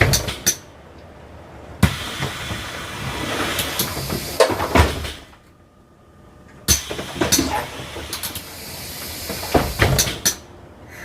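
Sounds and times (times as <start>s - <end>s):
hiss of air: 1.8s - 5.0s, 6.7s - 10.3s.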